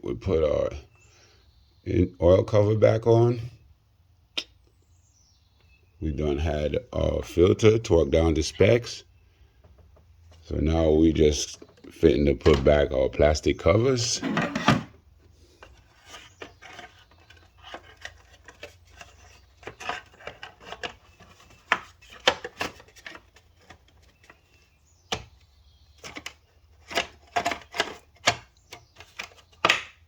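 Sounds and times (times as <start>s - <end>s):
plastic covers clicking and knocking: 9.6s - 10.4s, 11.4s - 13.0s, 14.0s - 30.0s.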